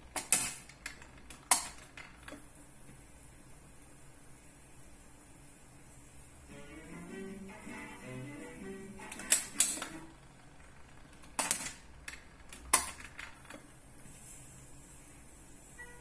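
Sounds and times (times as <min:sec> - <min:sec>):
record player mechanism clicks: 0:09.0 - 0:10.1, 0:11.2 - 0:13.7.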